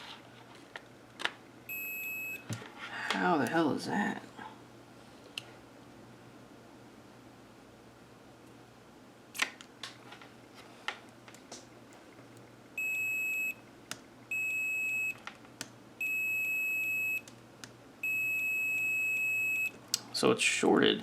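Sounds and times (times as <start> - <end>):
multimeter high beeps: 1.7 - 2.5, 12.8 - 13.6, 14.3 - 15.2, 16.0 - 17.3, 18.0 - 19.8.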